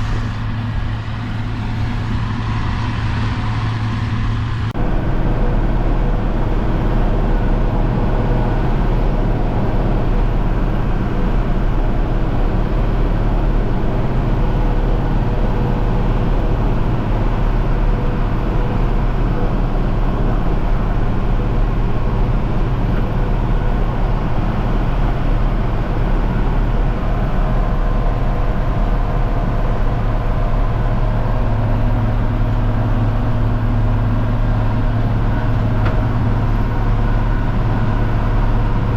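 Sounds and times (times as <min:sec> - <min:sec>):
tractor diesel engine under load: 0:00.0 - 0:38.9.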